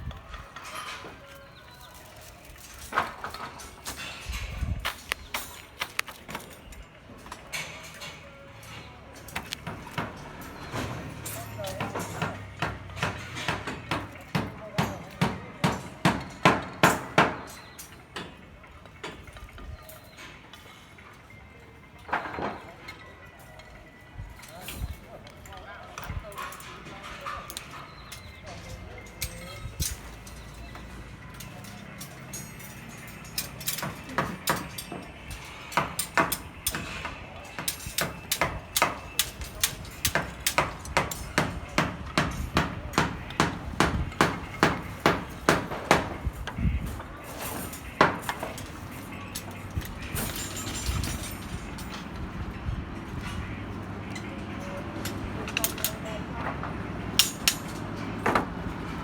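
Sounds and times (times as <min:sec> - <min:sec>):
hand hammer striking rebar: 0:09.2 - 0:18.4, 0:29.2 - 0:52.0, 0:57.2 - 0:58.5.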